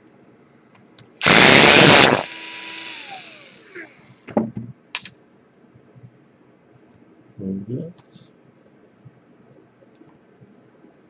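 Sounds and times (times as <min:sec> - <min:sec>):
power tool whining: 0:01.2 - 0:04.3.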